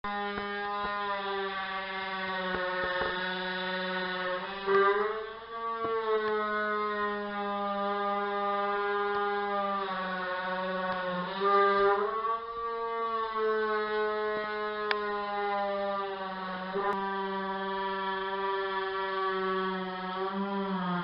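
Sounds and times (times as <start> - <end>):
electric wood saw whining: 0.0 - 21.0.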